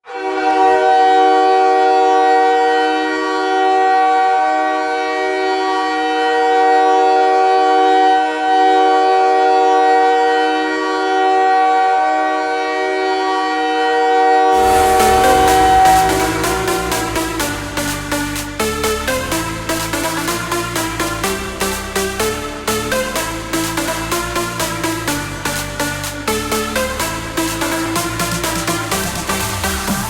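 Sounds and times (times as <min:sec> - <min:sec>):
electronic song: 0:14.5 - 0:30.0.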